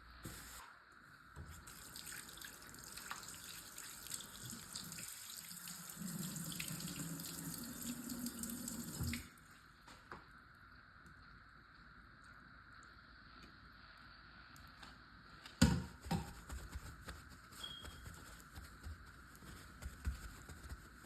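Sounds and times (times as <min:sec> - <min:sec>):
tap running into sink: 0:08.7 - 0:09.2.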